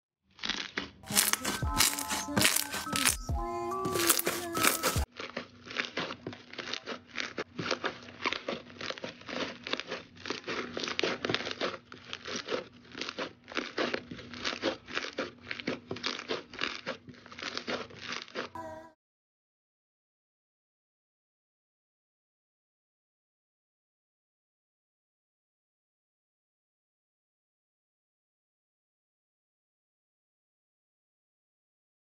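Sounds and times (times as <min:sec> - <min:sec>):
slime crackling and popping: 0:00.3 - 0:18.5
music: 0:01.1 - 0:05.1.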